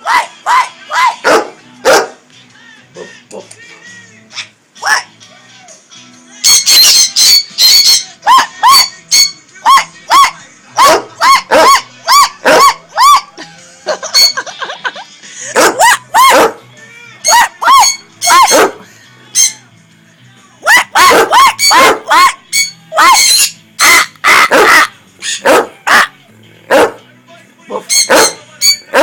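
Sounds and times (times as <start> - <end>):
parrots screeching: 6.4 - 10.4, 11.1 - 13.4, 14.0 - 14.5, 17.2 - 18.7, 19.3 - 19.6, 20.6 - 26.2, 27.8 - 29.0.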